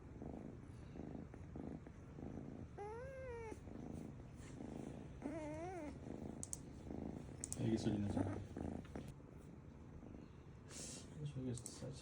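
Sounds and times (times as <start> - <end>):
cat purring: 0.0 - 9.2.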